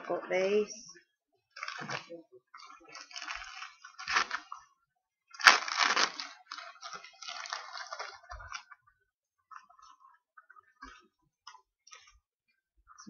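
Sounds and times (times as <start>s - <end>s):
sharp crackle: 0.3s - 12.2s
packaging crinkling and rustling: 1.6s - 4.6s, 5.3s - 8.8s.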